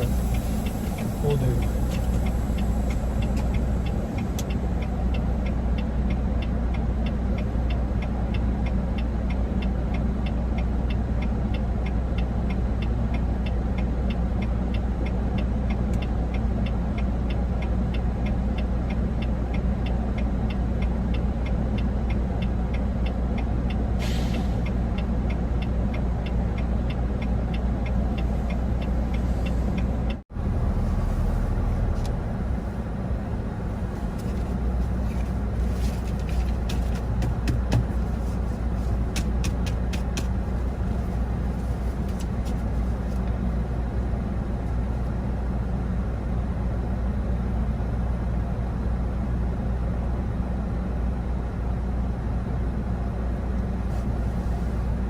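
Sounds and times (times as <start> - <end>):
truck engine and road drone: 0.0 - 55.0
short air hiss: 24.0 - 24.6.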